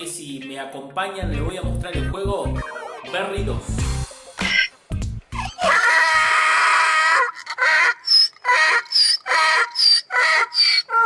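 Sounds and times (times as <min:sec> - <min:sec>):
animal calling: 0:05.4 - 0:11.0.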